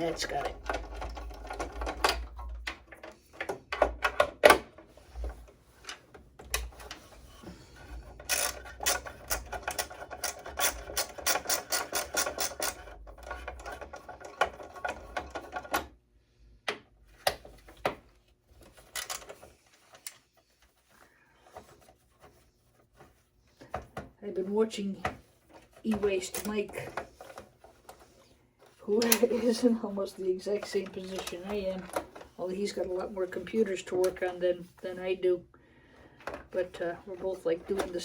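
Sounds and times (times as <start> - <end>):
screwdriver clicking on metal: 8.3 - 13.8.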